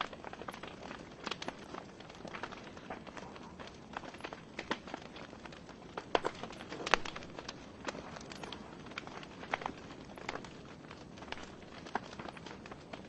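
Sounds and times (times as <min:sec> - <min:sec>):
logs crackling and popping: 0:00.0 - 0:13.0.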